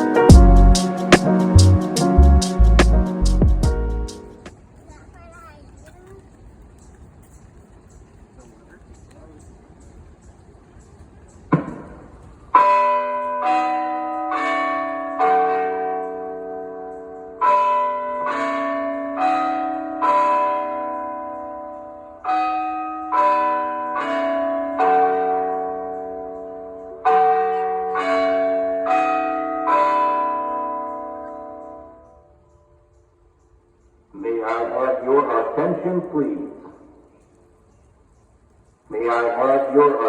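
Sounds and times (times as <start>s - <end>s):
voice announcement: 34.2s - 36.8s, 38.9s - 40.0s.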